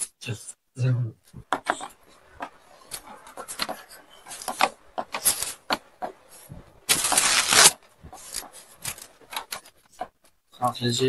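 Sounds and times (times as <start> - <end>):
clothing rustling: 1.3 - 10.4.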